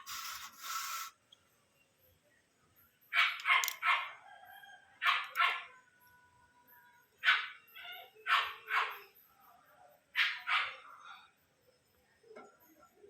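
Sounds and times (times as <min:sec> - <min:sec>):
dog barking: 0:03.1 - 0:04.2, 0:05.0 - 0:05.8, 0:07.2 - 0:09.1, 0:10.2 - 0:10.9.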